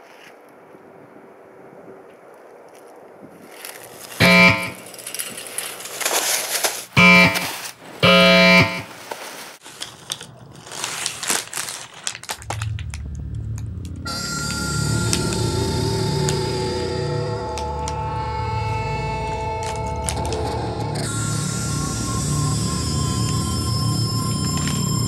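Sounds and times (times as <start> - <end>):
clicks: 4.2 - 4.8, 7.0 - 8.8
low buzzer: 4.2 - 4.9, 7.0 - 8.9, 14.0 - 25.0
music: 12.5 - 25.0.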